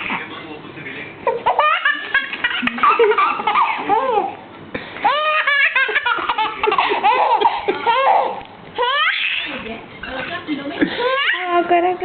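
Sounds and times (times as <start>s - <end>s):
baby laughing: 1.2s - 4.4s, 5.0s - 9.7s, 10.9s - 11.5s.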